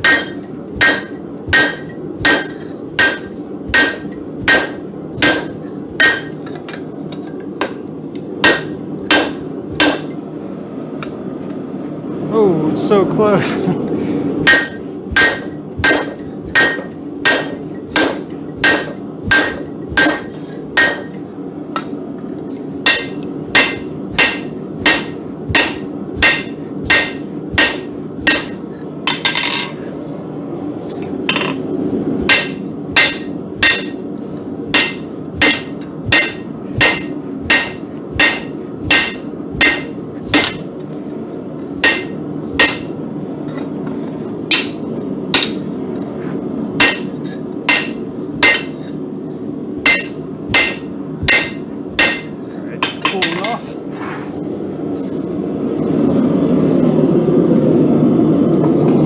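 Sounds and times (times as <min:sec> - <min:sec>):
hammer ringing on hot steel: 0:00.0 - 0:10.2, 0:14.4 - 0:21.3, 0:22.8 - 0:29.8, 0:32.2 - 0:34.1, 0:34.7 - 0:40.8, 0:41.8 - 0:43.1, 0:44.5 - 0:45.7, 0:46.8 - 0:49.1, 0:49.8 - 0:53.6
steady low rumble: 0:00.0 - 0:53.0.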